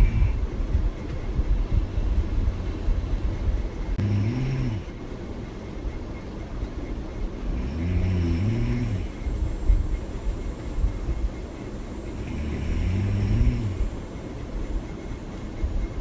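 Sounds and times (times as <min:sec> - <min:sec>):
woman snoring: 0:04.0 - 0:04.9, 0:07.6 - 0:09.2, 0:12.2 - 0:13.9.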